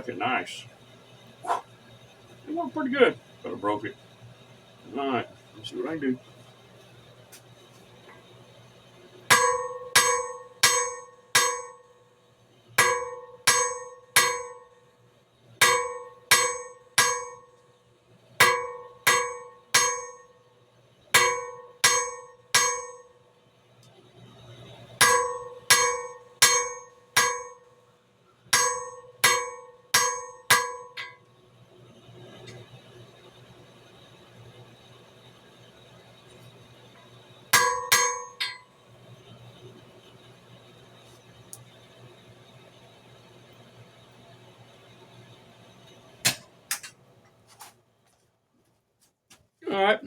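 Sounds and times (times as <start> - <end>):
hammer striking steel on anvil: 9.3 - 11.9, 12.8 - 14.8, 15.6 - 17.5, 18.4 - 20.4, 21.2 - 23.2, 25.0 - 27.7, 28.5 - 31.2, 37.5 - 38.7.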